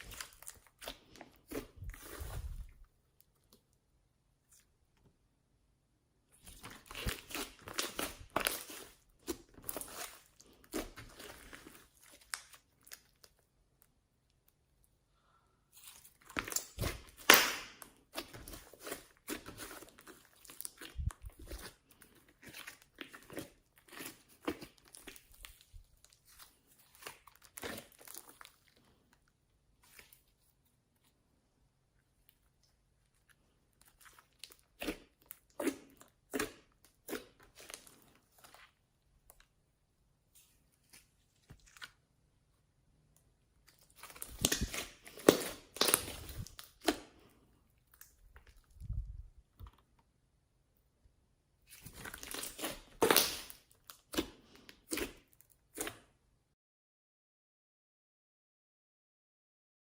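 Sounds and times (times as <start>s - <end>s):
slime crackling and squelching: 0.0s - 4.8s, 6.3s - 31.2s, 32.0s - 50.2s, 51.6s - 56.2s.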